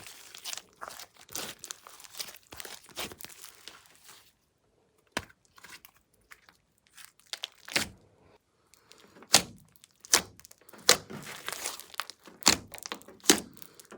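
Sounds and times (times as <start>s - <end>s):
slime crackling: 0.0s - 3.8s, 6.9s - 7.9s, 8.9s - 13.9s.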